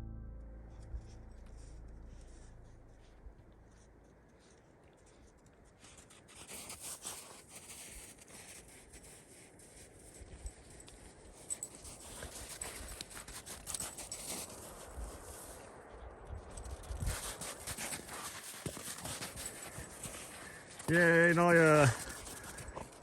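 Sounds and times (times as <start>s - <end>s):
footsteps crunching on rocky trail: 16.9s - 23.0s.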